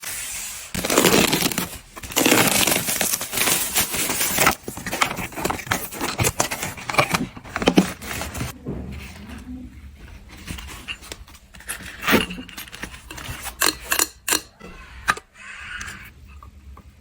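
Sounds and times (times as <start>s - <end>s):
packaging crinkling and tearing: 0.0s - 8.6s.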